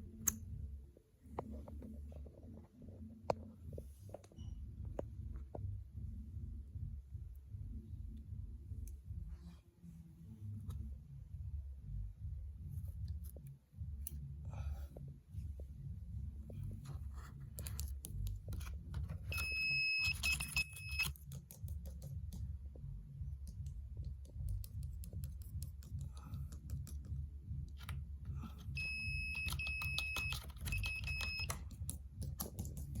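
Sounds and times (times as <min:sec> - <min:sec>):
electronic alarm buzzer beeping: 0:19.3 - 0:21.1, 0:28.8 - 0:31.5.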